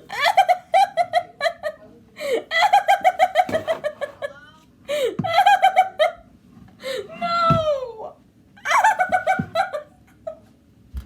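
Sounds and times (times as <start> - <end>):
girl laughing: 0.0 - 6.3, 6.9 - 10.5
girl squealing: 7.0 - 8.2.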